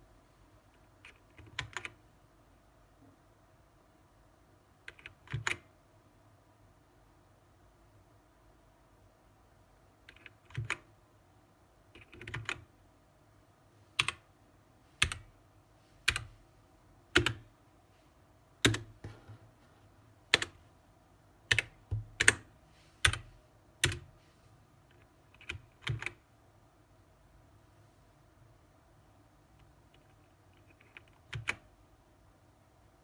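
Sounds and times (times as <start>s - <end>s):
mechanical keyboard keys clacking: 10.1s - 10.9s, 12.0s - 12.7s, 21.5s - 24.1s, 24.9s - 26.2s.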